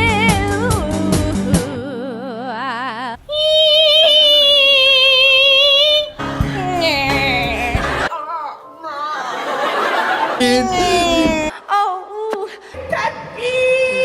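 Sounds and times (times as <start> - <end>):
woman singing with vibrato: 0.0 - 9.8, 10.4 - 14.0
musical backing: 6.1 - 11.5.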